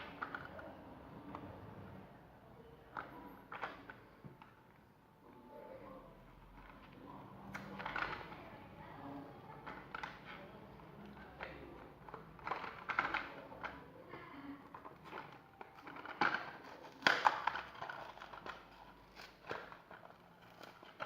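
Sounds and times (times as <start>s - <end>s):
toy car packaging clicks and crackles: 0.0s - 1.4s, 7.5s - 8.4s, 11.0s - 21.0s.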